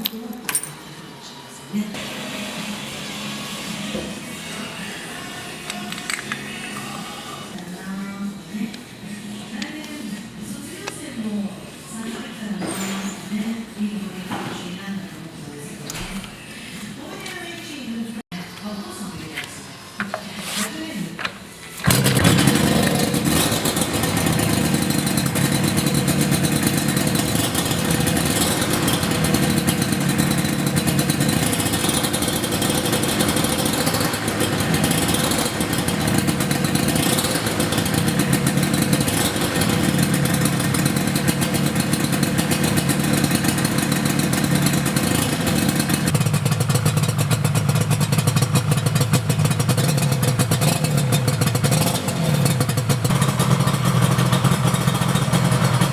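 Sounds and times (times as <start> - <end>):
motorcycle engine revving: 21.8 - 55.9.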